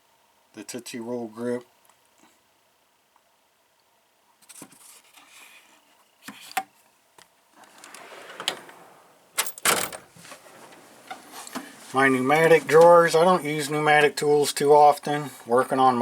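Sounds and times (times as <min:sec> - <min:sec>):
metal toolbox drawers rattling: 0:07.7 - 0:11.2.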